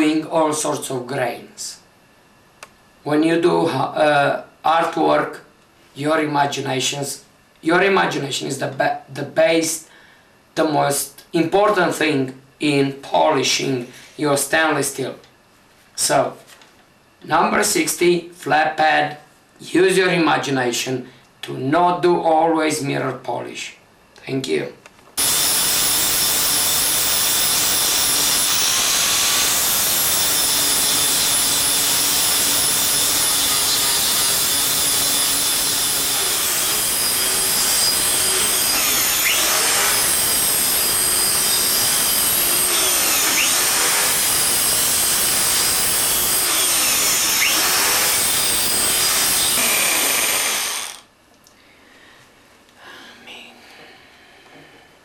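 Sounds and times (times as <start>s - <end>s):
electric polisher whining on steel: 25.2s - 51.0s.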